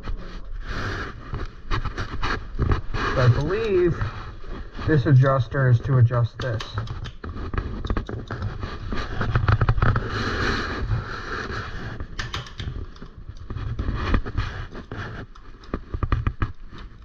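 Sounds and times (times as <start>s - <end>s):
bicycle drivetrain clicks and rattles: 12.1s - 17.0s.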